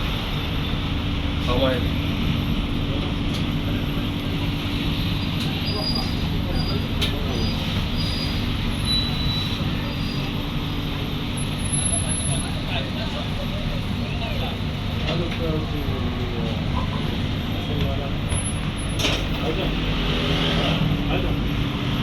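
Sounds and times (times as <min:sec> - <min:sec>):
moving vehicle rumble: 0:00.0 - 0:22.0
thin high squeals: 0:07.4 - 0:10.3.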